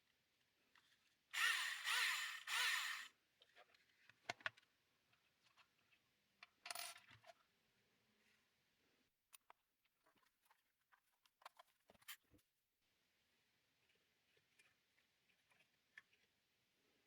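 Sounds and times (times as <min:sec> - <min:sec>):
electric hand drill whining: 0:01.4 - 0:03.1.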